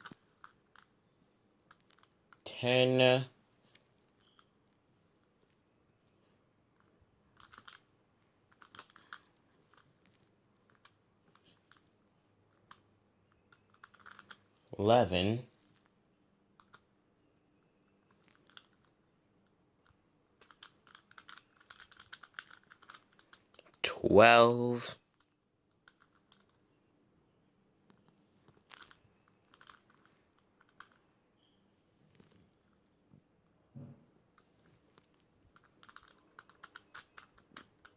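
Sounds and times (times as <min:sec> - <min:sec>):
puzzle cube clicking and rattling: 0:00.0 - 0:01.0, 0:01.6 - 0:02.5, 0:03.8 - 0:04.6, 0:06.8 - 0:14.6, 0:16.6 - 0:16.9, 0:18.1 - 0:23.8, 0:25.1 - 0:26.6, 0:28.0 - 0:31.1, 0:34.3 - 0:37.9.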